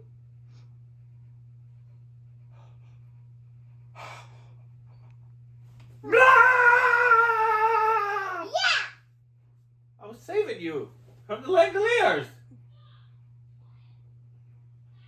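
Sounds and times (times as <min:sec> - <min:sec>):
child yelling: 0:06.1 - 0:09.0.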